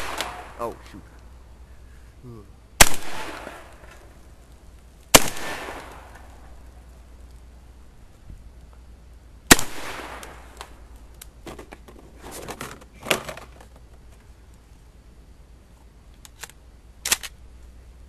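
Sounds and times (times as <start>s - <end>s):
shotgun shot: 0.0s - 0.6s, 2.8s - 3.7s, 5.1s - 6.2s, 9.5s - 10.5s.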